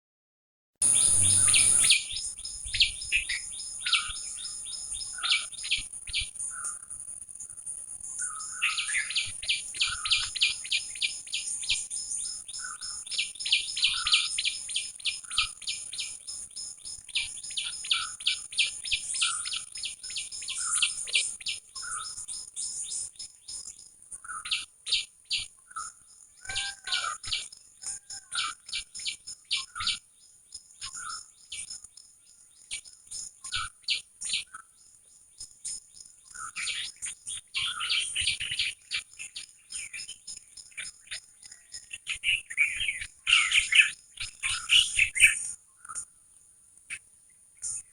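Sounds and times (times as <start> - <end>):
lower bird calls: 0.8 - 6.8, 8.2 - 23.6, 24.2 - 30.0, 36.3 - 46.0
small birds chirping: 0.8 - 47.9
high-pitched drone: 0.9 - 1.9.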